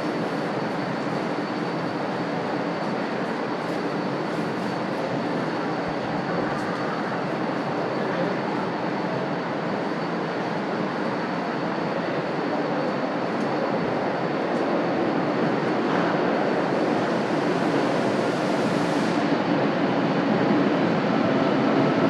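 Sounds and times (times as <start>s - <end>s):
train and machinery rumble: 0.0s - 22.0s.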